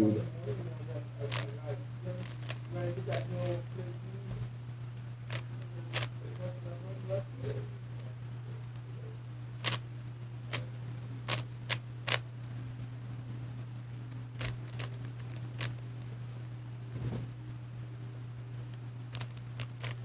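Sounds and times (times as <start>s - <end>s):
steady low hum: 0.0s - 20.0s
puzzle cube clacking clicks: 2.2s - 2.7s, 5.3s - 6.1s, 9.6s - 9.8s, 11.3s - 12.2s, 14.4s - 15.8s, 19.1s - 20.0s.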